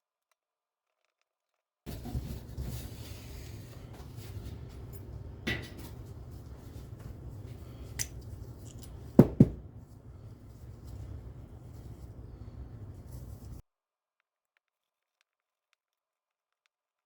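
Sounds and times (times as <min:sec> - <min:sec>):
low room hum: 0:01.9 - 0:13.6.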